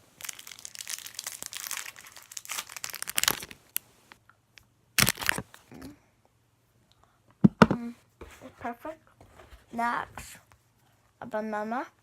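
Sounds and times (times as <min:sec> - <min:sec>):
plastic wrapper tearing and crinkling: 0:00.0 - 0:04.2, 0:05.0 - 0:05.6.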